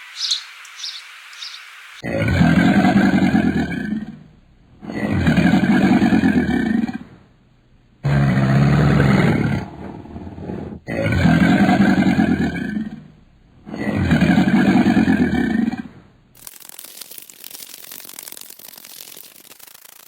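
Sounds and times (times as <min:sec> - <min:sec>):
large animal roaring: 0:02.0 - 0:04.2, 0:04.8 - 0:07.2, 0:08.0 - 0:13.1, 0:13.7 - 0:16.0.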